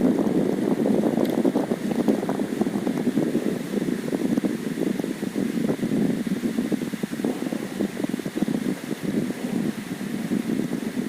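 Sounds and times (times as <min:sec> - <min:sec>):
steady rain: 0:00.0 - 0:11.0
wind buffeting microphone: 0:00.0 - 0:11.0.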